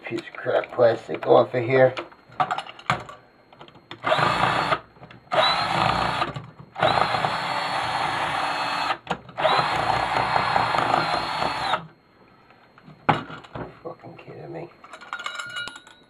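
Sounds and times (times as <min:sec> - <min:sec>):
power drill spinning: 0:04.0 - 0:11.9.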